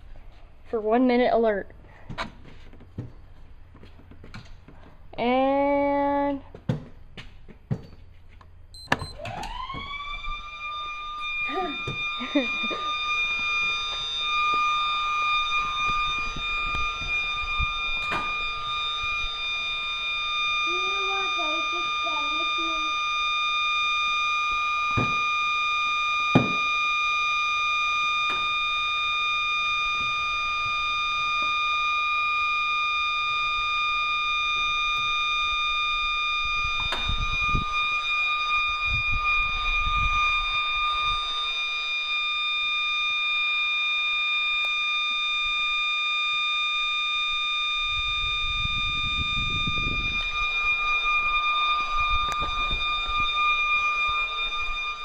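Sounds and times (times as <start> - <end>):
warning siren steady tone: 7.7 - 55.0
low rumbling near microphone: 8.6 - 23.4, 34.7 - 42.2, 47.2 - 55.0.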